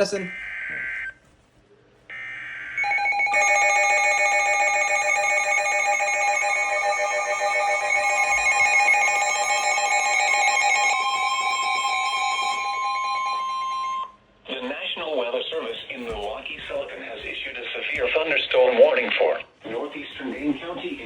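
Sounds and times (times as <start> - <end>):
electronic alarm tones: 0.0 - 1.2, 2.1 - 14.2.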